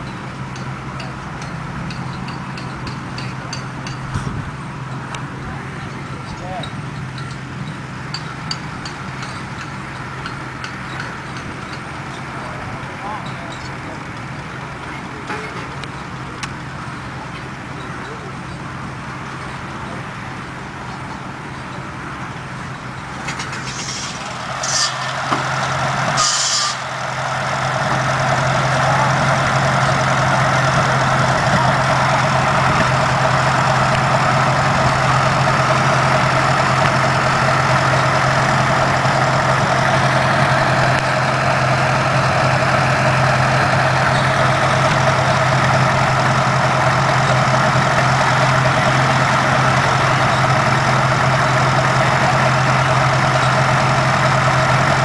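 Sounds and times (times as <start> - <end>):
tractor engine running: 0.0 - 55.0
hissing bursts: 23.5 - 28.9.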